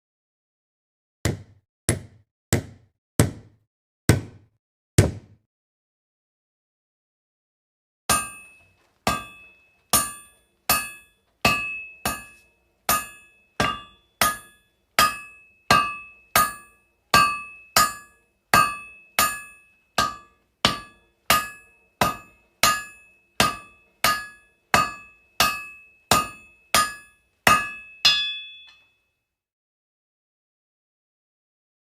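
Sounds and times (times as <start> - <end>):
hammering with metallic ring: 8.1 - 29.1.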